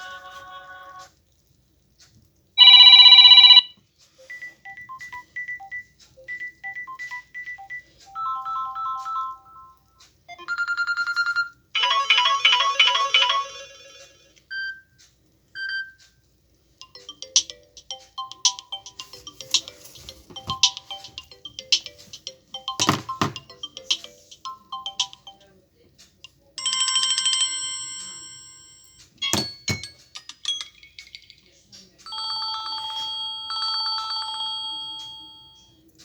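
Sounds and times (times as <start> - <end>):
phone ringtone melodies and beeps: 2.6 - 14.9, 15.6 - 16.0, 16.8 - 25.4, 32.1 - 35.7.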